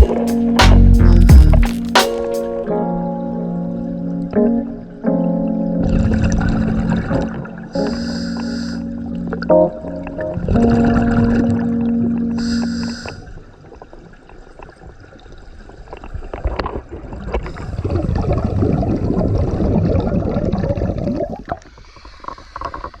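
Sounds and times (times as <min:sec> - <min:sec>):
underwater bubbling of exhaled air: 0:10.0 - 0:21.8.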